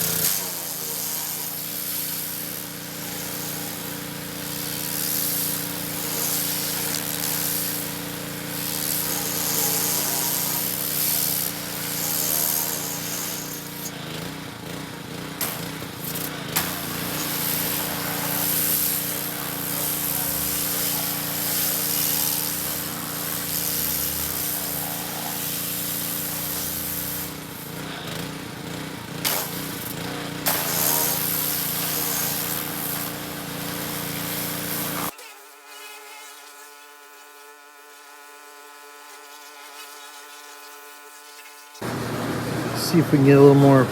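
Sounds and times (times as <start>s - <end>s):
pressure washer spraying: 0.0s - 13.9s, 15.3s - 35.1s.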